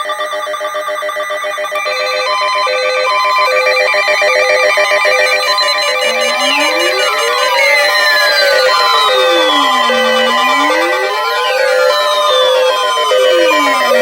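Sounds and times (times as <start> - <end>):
rising siren-like tone: 5.3 - 14.0
two-note electronic beep: 5.5 - 14.0.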